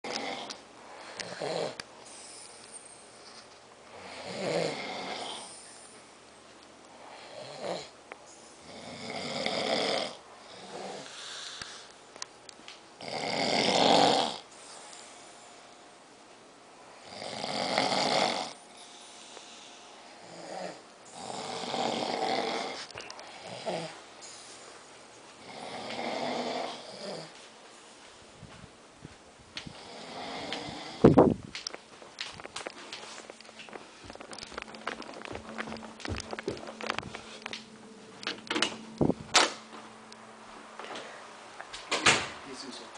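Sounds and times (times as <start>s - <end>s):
person snoring: 0.0s - 2.4s, 3.9s - 5.7s, 7.0s - 7.9s, 8.6s - 11.9s, 13.0s - 14.5s, 17.0s - 24.5s, 25.4s - 27.4s, 29.7s - 31.2s
quiet breathing: 10.4s - 12.0s, 14.5s - 16.0s, 18.5s - 28.4s.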